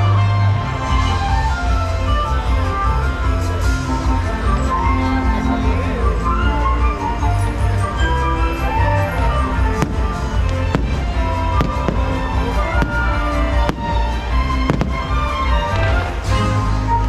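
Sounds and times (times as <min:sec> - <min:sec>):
orchestral music: 0:00.0 - 0:17.0
fireworks bangs: 0:09.6 - 0:16.2.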